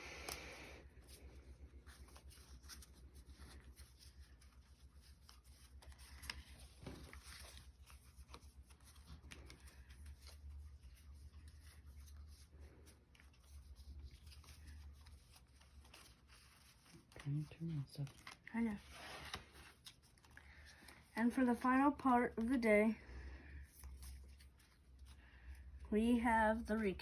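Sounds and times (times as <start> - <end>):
trading cards clicking and rustling: 1.8 - 22.7.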